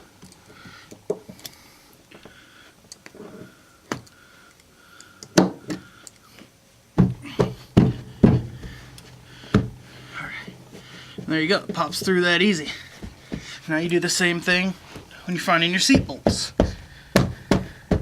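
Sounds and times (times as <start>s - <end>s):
handling thumps: 7.0s - 18.0s.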